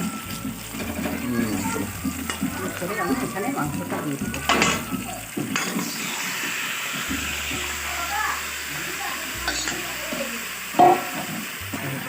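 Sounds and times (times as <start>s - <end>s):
chicken sizzling in hot oil: 0.0s - 12.0s
pot clatter: 0.3s - 6.1s, 10.8s - 11.6s.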